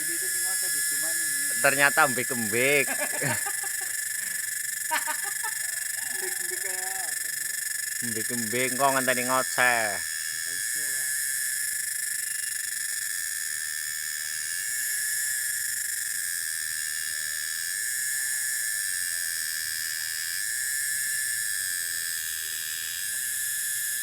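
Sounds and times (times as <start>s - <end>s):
cicada shrill drone: 0.0s - 24.0s.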